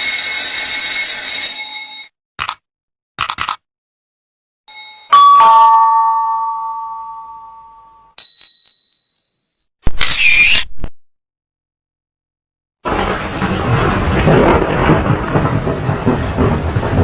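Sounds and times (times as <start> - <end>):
two-note doorbell chime: 4.7 - 9.6.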